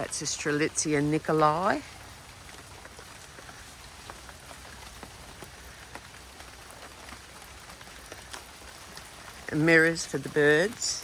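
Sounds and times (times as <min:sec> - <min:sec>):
light rain pattering: 0:00.0 - 0:11.0.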